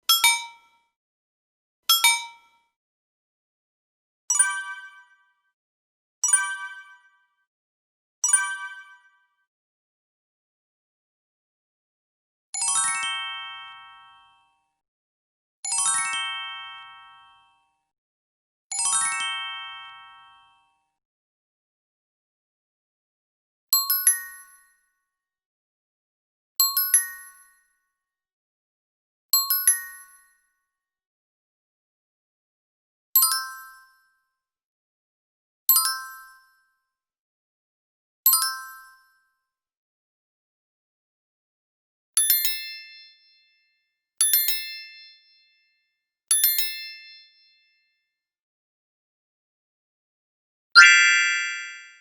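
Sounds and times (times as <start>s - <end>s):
bright three-note rising chime: 50.8s - 52.0s.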